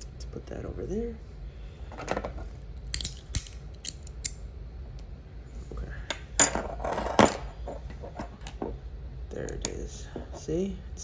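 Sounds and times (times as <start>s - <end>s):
metal fidget slider clicking: 2.9s - 4.4s.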